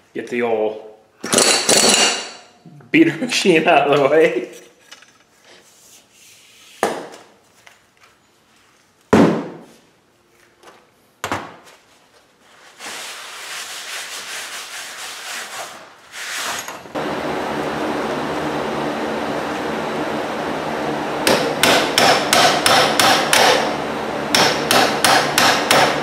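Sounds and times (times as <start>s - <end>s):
steady mechanical hum: 0.0s - 26.0s
sharp knocks: 21.2s - 23.6s.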